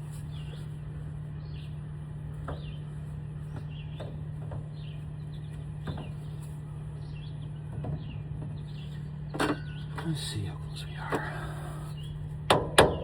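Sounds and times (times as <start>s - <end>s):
steady low hum: 0.0s - 13.0s
bird chirping: 7.0s - 12.3s.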